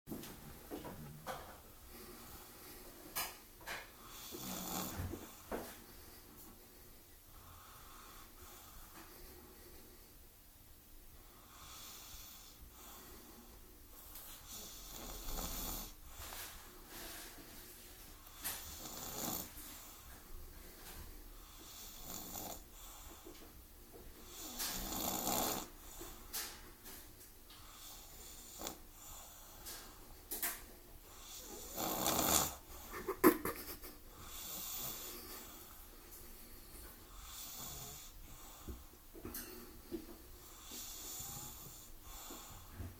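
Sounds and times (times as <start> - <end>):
quiet snoring: 1.9 - 6.2, 11.2 - 17.1, 18.2 - 23.6, 24.2 - 26.6, 27.5 - 30.0, 31.0 - 32.9, 34.1 - 42.9
person snoring: 4.1 - 5.2, 31.2 - 33.1.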